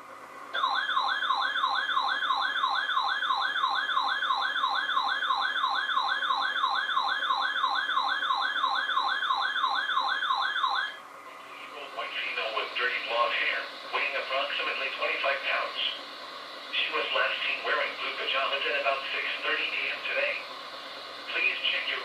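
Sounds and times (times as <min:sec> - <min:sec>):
electronic siren whooping: 0:00.6 - 0:11.0.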